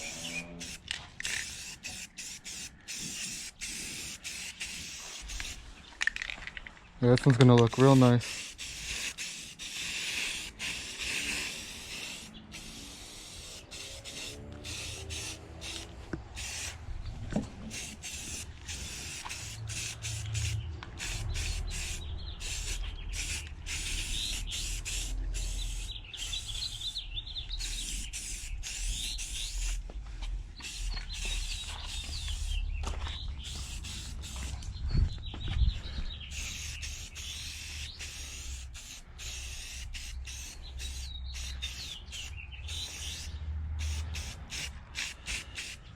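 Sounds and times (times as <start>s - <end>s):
paint spray hissing: 0.0s - 5.6s, 7.8s - 16.8s, 17.6s - 29.9s, 30.6s - 34.6s, 36.3s - 45.9s.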